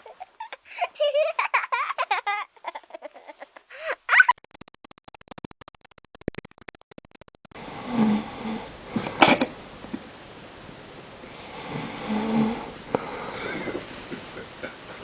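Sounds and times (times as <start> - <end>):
man snoring: 7.6 - 9.2, 11.3 - 13.8.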